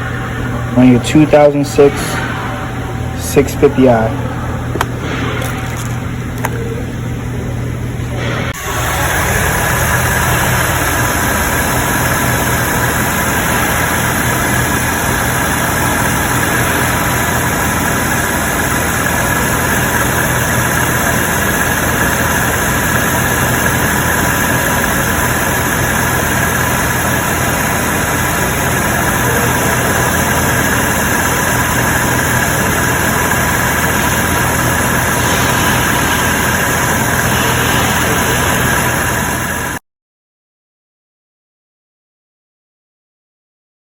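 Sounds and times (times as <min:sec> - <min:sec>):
car engine idling: 0:08.6 - 0:39.8.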